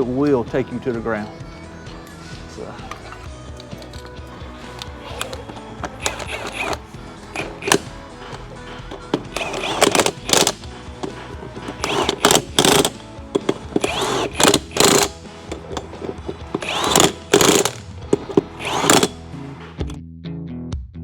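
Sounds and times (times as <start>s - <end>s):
background music: 0.0s - 21.0s
impact gun bursts: 4.9s - 19.2s.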